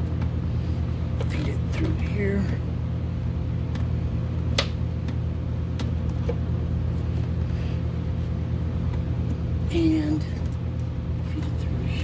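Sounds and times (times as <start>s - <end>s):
low background hum: 0.0s - 12.0s.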